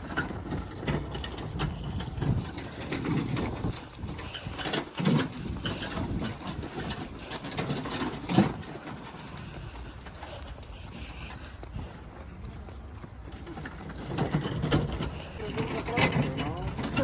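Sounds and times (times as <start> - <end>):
hand tools clicking on metal: 0.0 - 10.6
wind rumble on microphone: 0.0 - 17.0.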